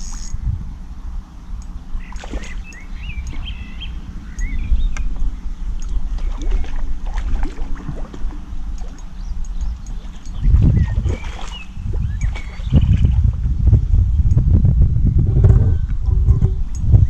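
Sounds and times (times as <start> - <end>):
wind rumble on microphone: 0.0 - 17.0
small bird warbling song: 1.5 - 6.8, 8.8 - 17.0.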